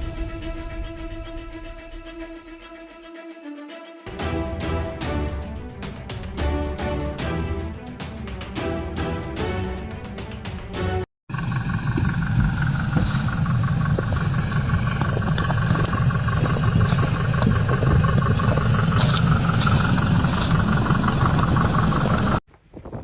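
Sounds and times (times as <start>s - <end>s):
vehicle engine rumbling: 11.3s - 22.4s.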